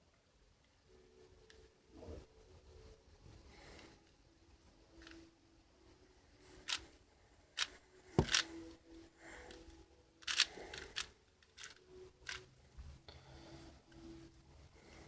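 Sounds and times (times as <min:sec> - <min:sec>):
puzzle cube plastic clicks: 0:06.6 - 0:06.9, 0:07.6 - 0:08.6, 0:10.2 - 0:12.5.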